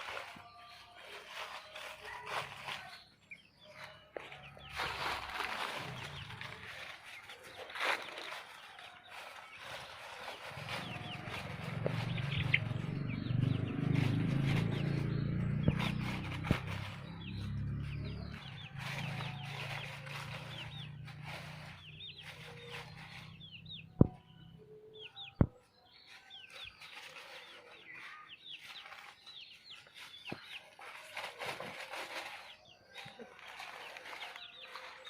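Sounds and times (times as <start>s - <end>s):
hens clucking: 0.0s - 24.2s.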